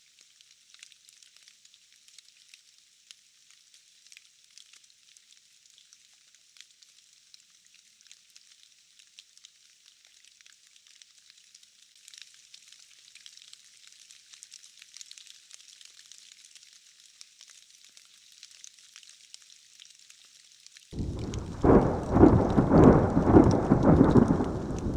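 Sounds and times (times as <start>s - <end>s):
light rain patter: 0.0s - 24.9s.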